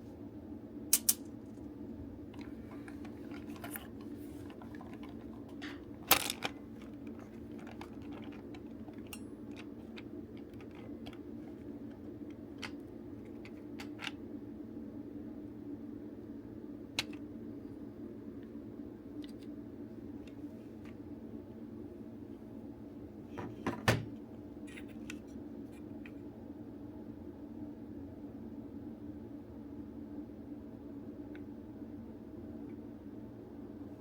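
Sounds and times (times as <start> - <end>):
steady low hum: 0.0 - 34.0
plastic toy parts clicking: 0.9 - 1.3, 4.5 - 12.0
sharp plastic clack: 0.9 - 1.3.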